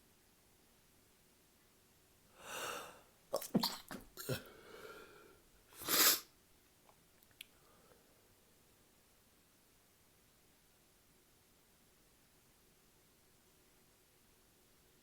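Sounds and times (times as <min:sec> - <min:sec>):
loud breath in: 0:02.4 - 0:03.1, 0:04.2 - 0:06.2
person sneezing: 0:02.4 - 0:04.6, 0:05.8 - 0:06.2.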